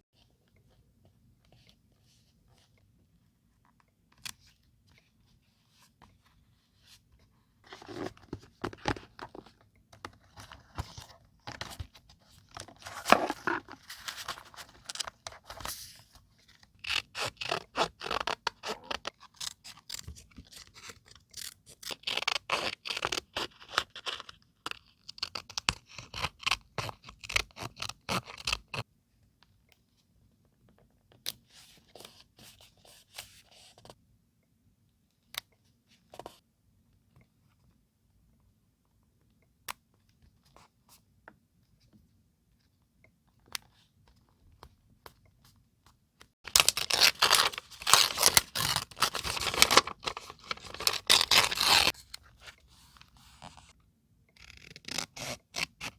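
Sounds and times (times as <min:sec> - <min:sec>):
paper being scraped: 0:50.7 - 0:51.9.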